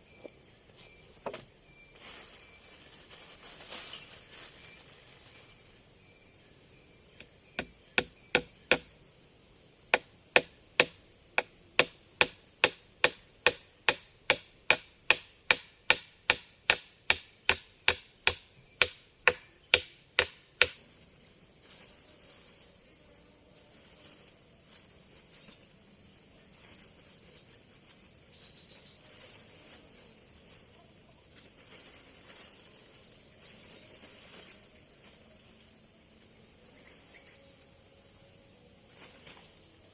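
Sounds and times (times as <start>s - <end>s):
insects trilling: 0.0s - 39.9s
tool striking wood: 7.2s - 8.9s, 9.9s - 20.8s.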